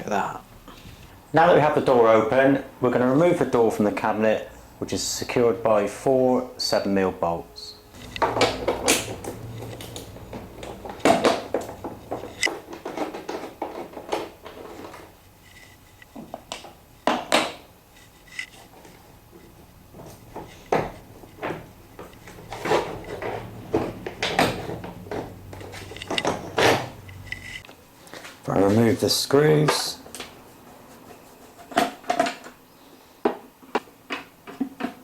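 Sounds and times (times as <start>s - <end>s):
hand tool clattering on metal: 8.0s - 14.9s.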